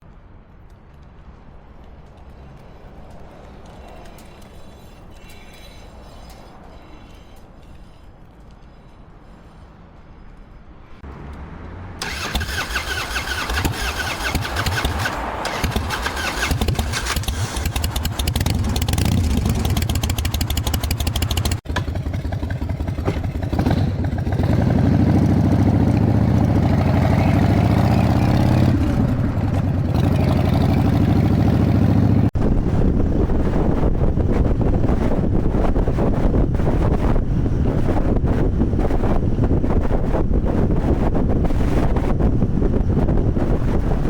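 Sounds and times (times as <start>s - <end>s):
motorcycle engine starting and running: 12.0s - 32.4s.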